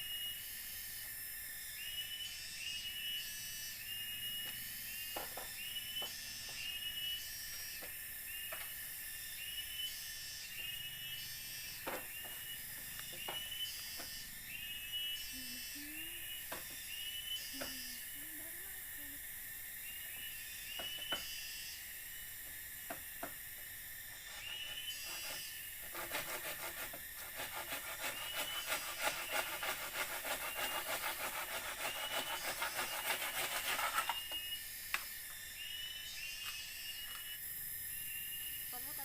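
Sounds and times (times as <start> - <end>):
high forest hiss: 0.0 - 39.0
rhythmic scraping on wood: 24.1 - 34.5.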